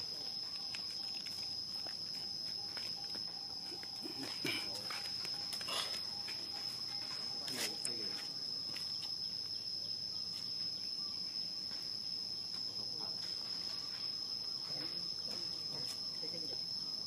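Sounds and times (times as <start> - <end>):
faint scattered sounds: 0.0 - 10.8
insects droning: 0.0 - 17.0.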